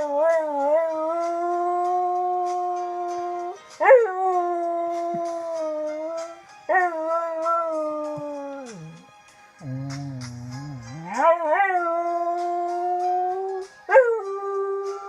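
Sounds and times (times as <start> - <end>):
dog howling: 10.8 - 15.0.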